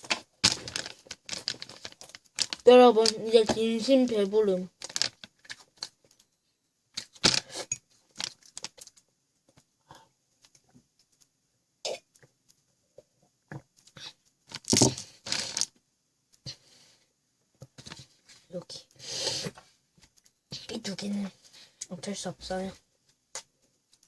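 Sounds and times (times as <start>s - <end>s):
snack packaging crinkling: 0.0s - 3.2s, 4.8s - 6.0s, 8.2s - 9.0s, 14.5s - 15.7s.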